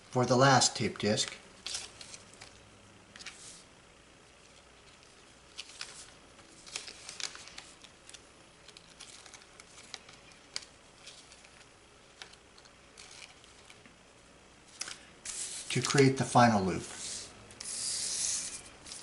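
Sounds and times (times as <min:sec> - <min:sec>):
plastic sheet crinkling: 0:04.4 - 0:14.0, 0:14.6 - 0:17.3.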